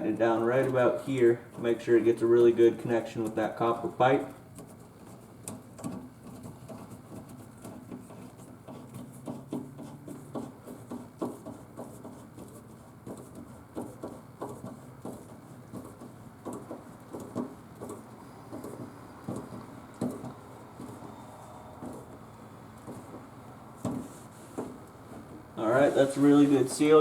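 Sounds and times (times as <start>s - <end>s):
tool clicking and tapping on fitting: 4.2s - 25.5s.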